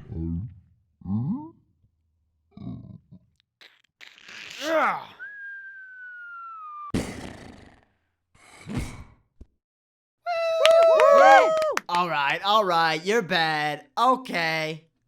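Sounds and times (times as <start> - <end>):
downward gliding whistle: 5.2 - 6.9.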